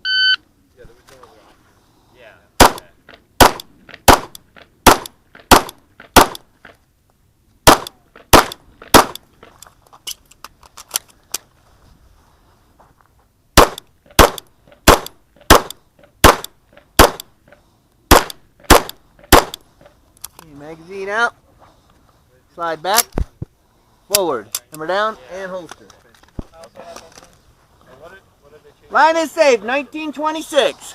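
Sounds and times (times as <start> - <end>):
handgun shots: 2.6 - 6.4, 7.7 - 9.2, 13.6 - 17.3, 18.1 - 19.6.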